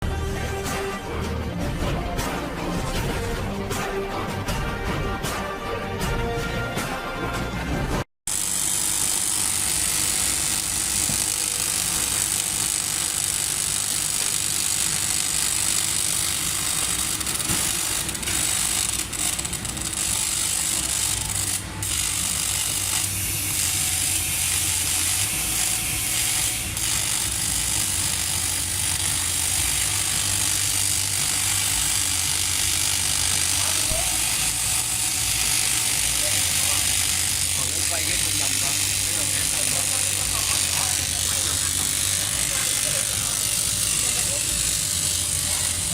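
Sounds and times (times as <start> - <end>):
welding arc hissing: 8.3 - 45.9.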